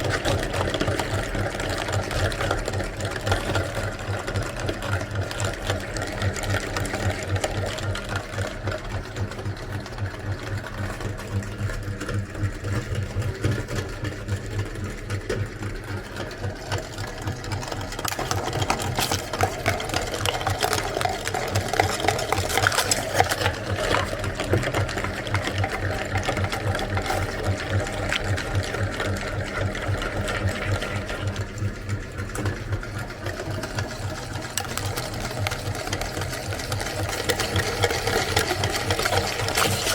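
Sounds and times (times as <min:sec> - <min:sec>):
electric meat grinder running: 0:00.0 - 0:39.9.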